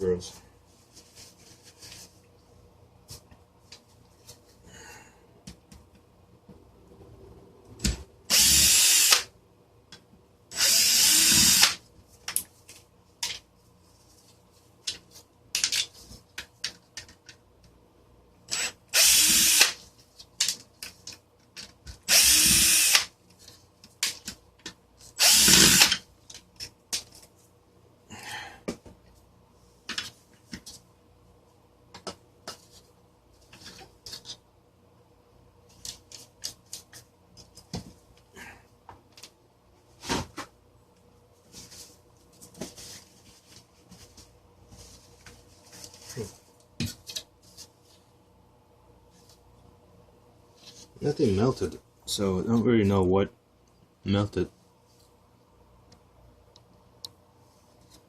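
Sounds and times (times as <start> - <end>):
power drill running: 8.3 - 9.3, 10.5 - 11.8, 18.5 - 19.8, 22.1 - 23.1, 25.2 - 26.0
clicks and knocks of parts: 14.8 - 17.8.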